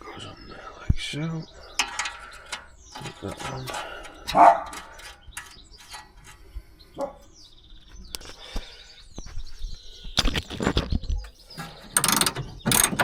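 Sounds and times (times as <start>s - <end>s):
small birds chirping: 0.0s - 13.0s
hand tools clicking and knocking: 1.7s - 6.4s, 11.6s - 13.0s
ratchet clicking: 12.0s - 13.0s.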